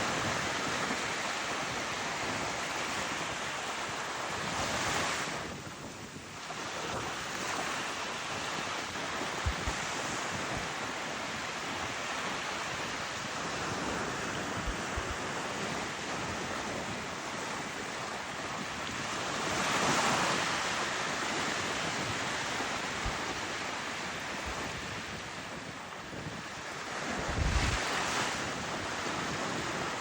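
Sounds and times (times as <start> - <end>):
wind buffeting microphone: 0.0 - 30.0
surf rushing: 26.6 - 30.0.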